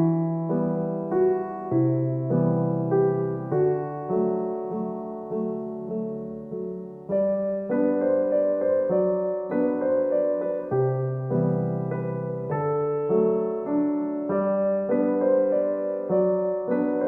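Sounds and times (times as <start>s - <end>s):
gentle piano music: 0.0s - 17.0s.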